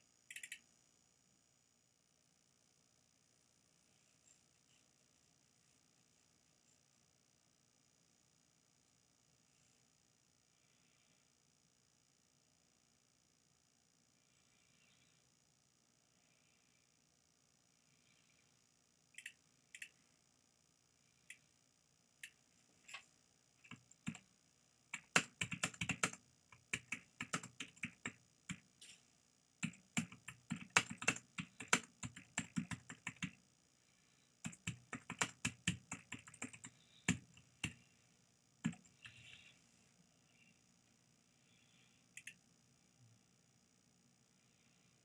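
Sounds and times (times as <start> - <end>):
typing on computer keyboard: 0.3 - 0.6, 23.6 - 24.2, 24.9 - 28.7, 29.6 - 33.4, 34.4 - 37.8, 38.6 - 39.2.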